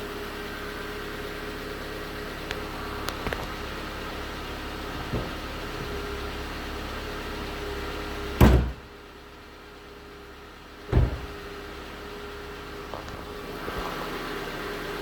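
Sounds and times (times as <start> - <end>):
car engine idling with knocking: 0.0 - 15.0
loud thumps: 4.9 - 6.1, 8.4 - 8.9, 10.9 - 11.5.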